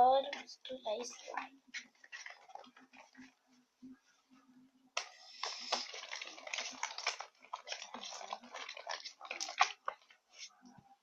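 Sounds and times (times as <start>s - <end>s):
wet slime squishing and popping: 1.2s - 3.4s, 5.0s - 10.6s.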